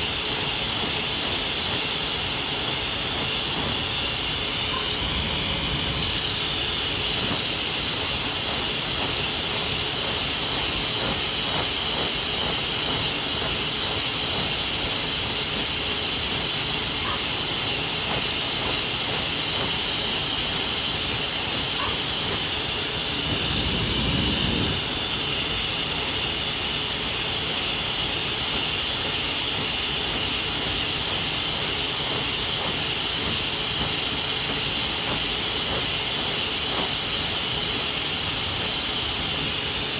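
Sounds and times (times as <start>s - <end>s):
pet dryer blowing air: 0.0s - 39.9s.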